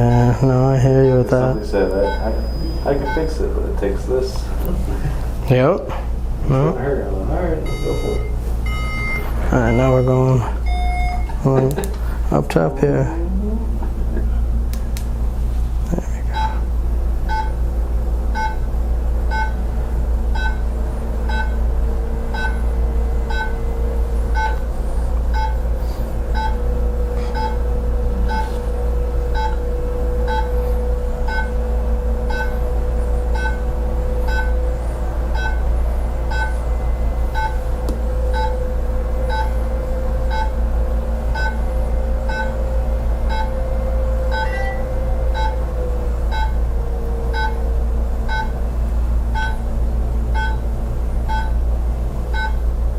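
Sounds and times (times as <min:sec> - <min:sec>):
wavering whine: 0:00.0 - 0:05.0, 0:17.3 - 0:51.6
electric device humming: 0:00.0 - 0:52.9
short beeps: 0:01.0 - 0:03.5, 0:07.6 - 0:11.6, 0:16.3 - 0:16.6, 0:17.3 - 0:17.6, 0:18.4 - 0:18.7, 0:19.3 - 0:19.6, 0:20.4 - 0:20.6, 0:21.3 - 0:21.6, 0:22.3 - 0:22.7, 0:23.3 - 0:23.6, 0:24.4 - 0:24.6, 0:25.3 - 0:25.6, 0:26.4 - 0:26.6, 0:27.2 - 0:28.6, 0:29.3 - 0:29.7, 0:30.3 - 0:30.6, 0:31.3 - 0:31.6, 0:32.3 - 0:32.6, 0:33.3 - 0:33.6, 0:34.3 - 0:34.6, 0:35.3 - 0:35.7, 0:36.3 - 0:36.6, 0:37.3 - 0:37.6, 0:38.3 - 0:38.6, 0:39.3 - 0:39.6, 0:40.3 - 0:40.6, 0:41.4 - 0:41.6, 0:42.3 - 0:42.6, 0:43.3 - 0:43.6, 0:44.3 - 0:45.6, 0:46.3 - 0:46.6, 0:47.3 - 0:47.6, 0:48.3 - 0:48.6, 0:49.4 - 0:49.6, 0:50.4 - 0:50.6, 0:51.3 - 0:51.6, 0:52.3 - 0:52.6.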